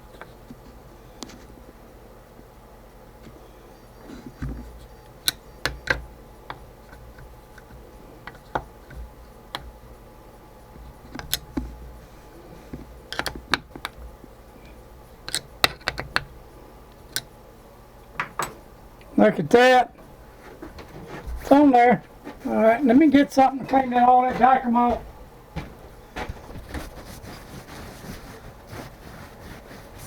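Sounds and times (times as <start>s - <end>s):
metal parts and tools clicking: 15.2s - 16.3s.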